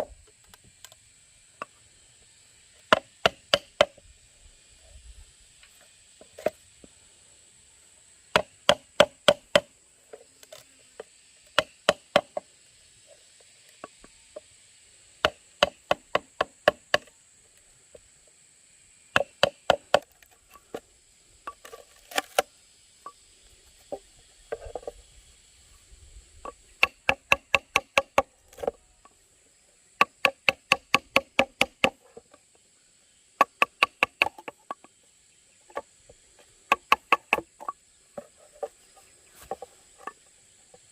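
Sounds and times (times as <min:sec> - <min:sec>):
tool knocking on bamboo: 0:02.9 - 0:04.0, 0:08.3 - 0:09.7, 0:11.5 - 0:12.4, 0:15.2 - 0:17.1, 0:19.2 - 0:20.0, 0:26.4 - 0:28.8, 0:30.0 - 0:32.1, 0:33.4 - 0:34.9, 0:36.7 - 0:38.8.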